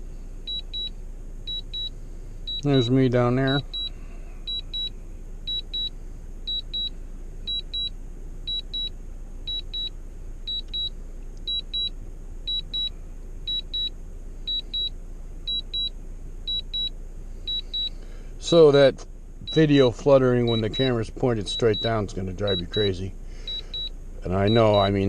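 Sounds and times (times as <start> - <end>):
low hum: 0.0 - 25.0
remote controller beeping: 10.5 - 10.9, 12.5 - 12.9, 20.5 - 25.0.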